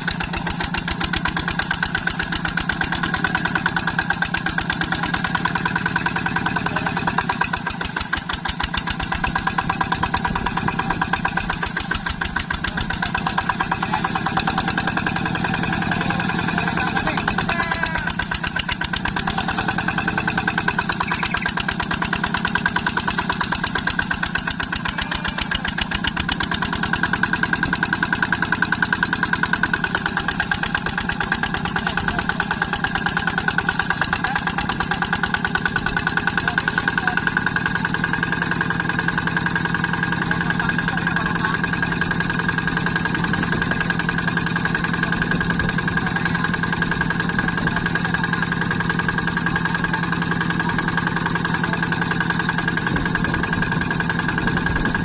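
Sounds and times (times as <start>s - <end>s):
tractor engine running: 0.0s - 55.0s.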